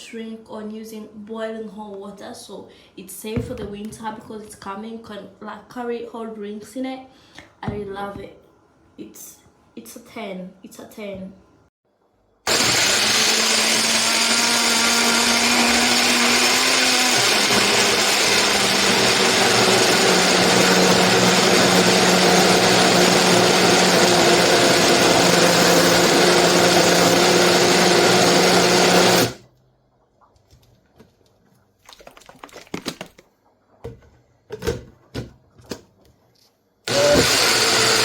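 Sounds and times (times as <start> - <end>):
blender motor running: 12.5 - 29.4, 36.9 - 38.0.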